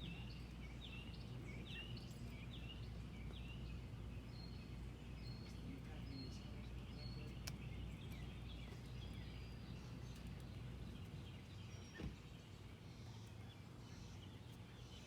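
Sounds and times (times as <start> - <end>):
low outdoor rumble: 0.0 - 15.0
small birds chirping: 0.0 - 15.0.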